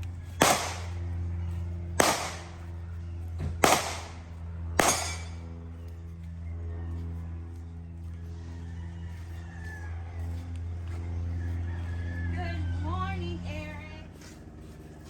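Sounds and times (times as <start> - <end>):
low hum: 0.0 - 15.0
pistol shots with echo: 0.4 - 1.1, 2.0 - 2.8, 3.6 - 5.4.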